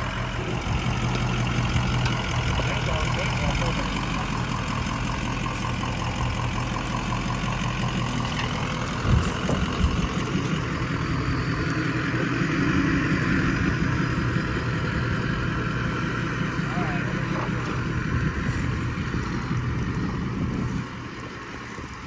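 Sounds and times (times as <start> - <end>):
diesel truck engine running: 0.0 - 22.0.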